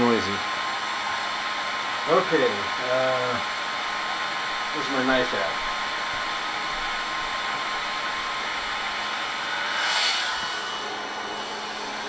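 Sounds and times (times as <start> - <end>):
drone propellers whirring: 4.4 - 12.0.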